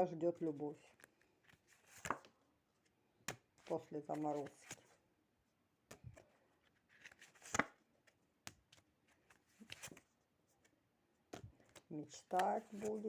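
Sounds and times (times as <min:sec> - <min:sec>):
cards clicking and tapping: 0:01.0 - 0:02.3, 0:03.2 - 0:04.9, 0:05.8 - 0:06.3, 0:11.2 - 0:13.0.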